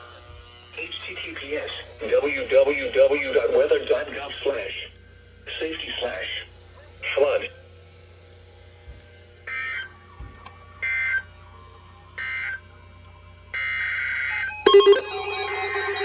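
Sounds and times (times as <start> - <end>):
two-tone digital data bursts: 13.6 - 16.0
loud music-like tones: 14.6 - 16.0.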